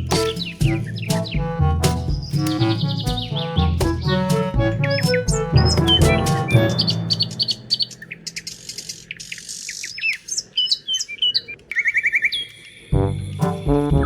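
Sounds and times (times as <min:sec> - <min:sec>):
bird trill: 0:00.0 - 0:01.4, 0:02.1 - 0:12.9
music with low beat: 0:00.0 - 0:07.7, 0:13.0 - 0:14.0
birds chirping: 0:00.0 - 0:13.8.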